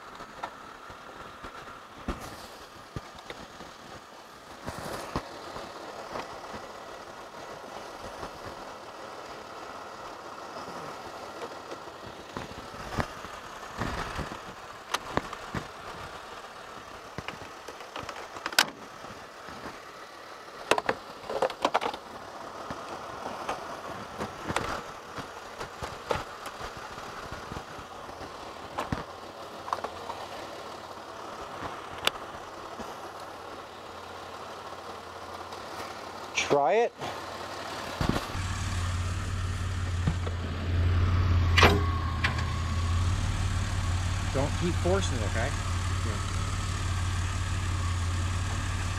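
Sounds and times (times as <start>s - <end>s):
car engine idling: 27.8s - 48.9s.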